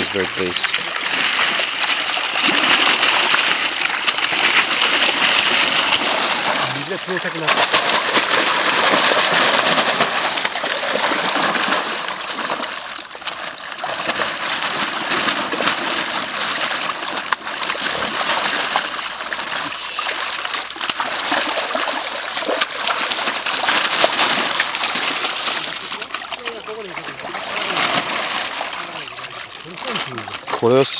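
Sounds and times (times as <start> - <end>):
fish splashing in water: 0.0 - 30.9.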